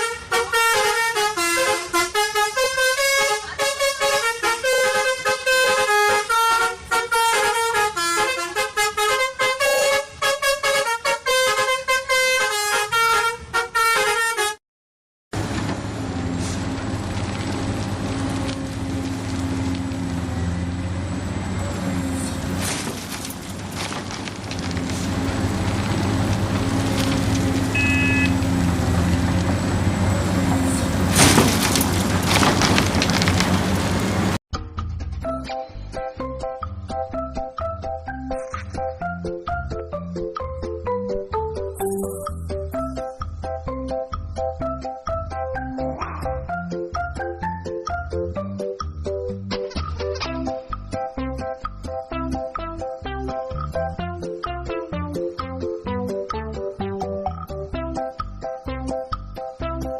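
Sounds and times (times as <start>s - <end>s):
heavy vehicle engine running: 15.4s - 34.4s
short high beep: 27.8s - 28.4s, 41.8s - 42.4s.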